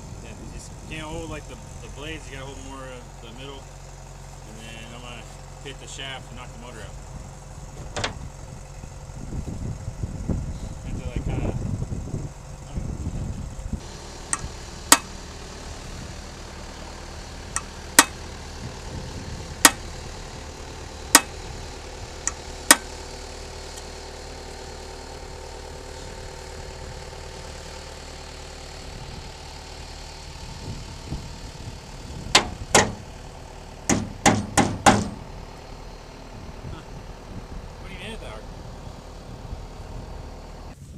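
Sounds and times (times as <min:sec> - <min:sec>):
steady mechanical hum: 0:00.0 - 0:40.9
hammer blows on metal: 0:33.9 - 0:35.3.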